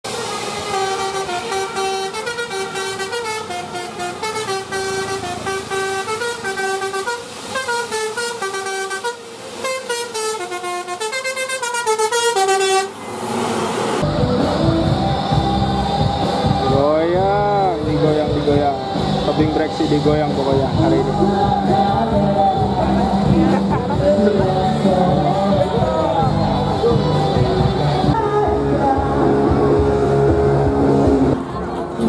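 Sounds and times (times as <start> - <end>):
multi-tone bus air horn melody: 0.1 - 13.0.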